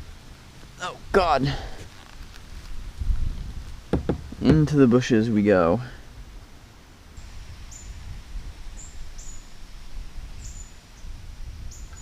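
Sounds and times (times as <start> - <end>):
wind rumble: 0.0 - 5.2, 7.2 - 12.0
handling noise: 1.9 - 4.8
small bird high chirps: 7.7 - 8.0, 8.8 - 9.6, 10.4 - 12.0.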